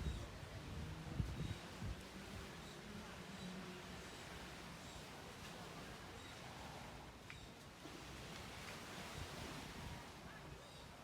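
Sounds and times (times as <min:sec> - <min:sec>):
small waves on sandy beach: 0:07.7 - 0:11.0.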